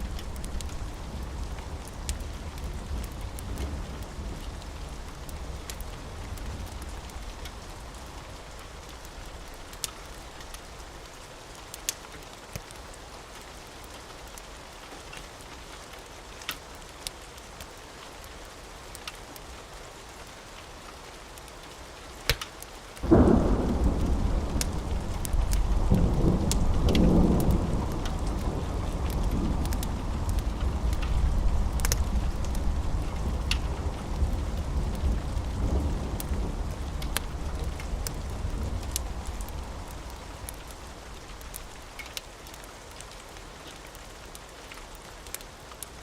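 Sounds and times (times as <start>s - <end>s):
steady rain: 0.0s - 46.0s
wood fire crackling: 0.0s - 46.0s
loud thunderclap: 23.0s - 40.2s
thunder rumble: 23.0s - 42.0s.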